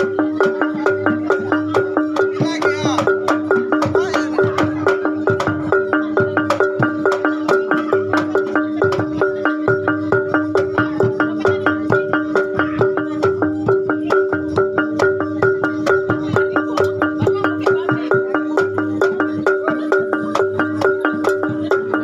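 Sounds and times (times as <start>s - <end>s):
tuned percussion music: 0.0s - 22.0s.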